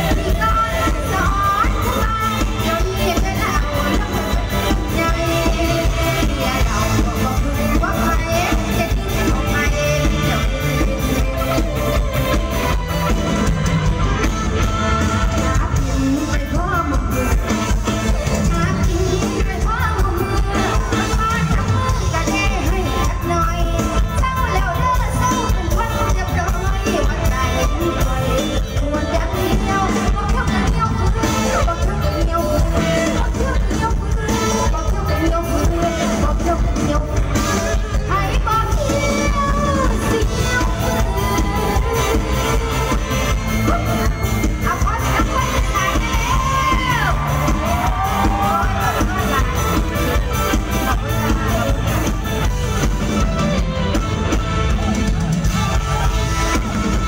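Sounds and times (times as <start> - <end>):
live band music with steady beat: 0.0 - 57.0
person singing: 0.0 - 57.0.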